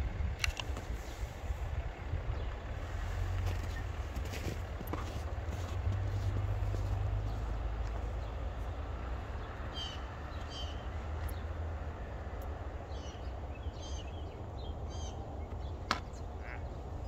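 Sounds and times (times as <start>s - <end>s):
steady low rumble: 0.0s - 17.0s
small birds chirping: 2.1s - 17.0s.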